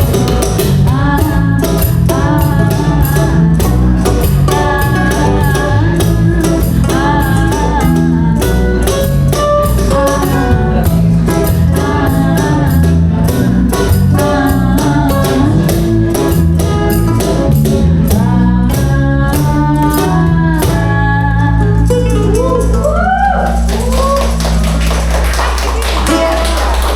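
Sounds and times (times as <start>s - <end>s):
steady percussion beat: 0.0s - 21.0s
person singing: 0.0s - 24.5s
guitar: 0.0s - 26.9s.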